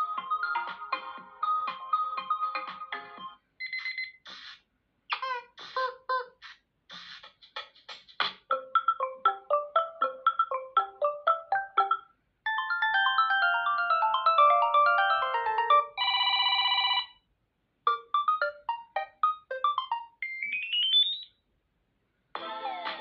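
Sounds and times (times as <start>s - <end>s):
electronic ringtone melodies: 0.0s - 4.2s, 8.5s - 17.2s, 17.9s - 21.3s.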